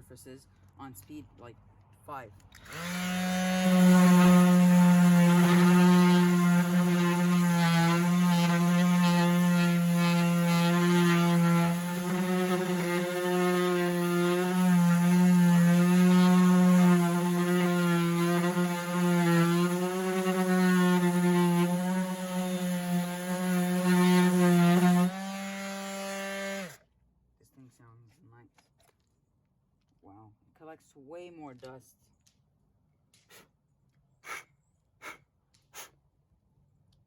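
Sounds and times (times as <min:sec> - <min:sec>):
orbital sander running on wood: 0:02.6 - 0:26.8.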